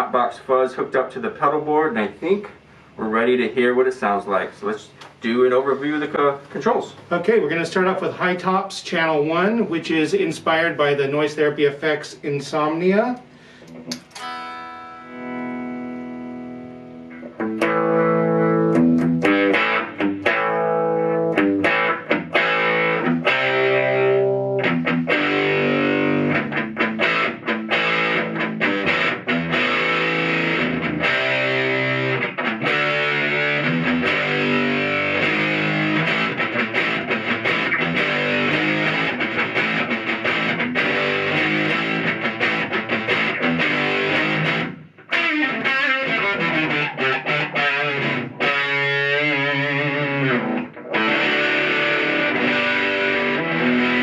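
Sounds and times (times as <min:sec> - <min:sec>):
fuzzy electric guitar chords: 0:13.2 - 0:54.0.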